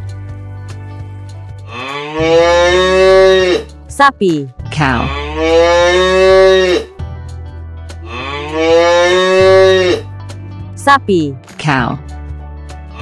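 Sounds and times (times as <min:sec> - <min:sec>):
cow mooing: 0:01.7 - 0:03.7, 0:04.8 - 0:07.0, 0:08.0 - 0:10.1.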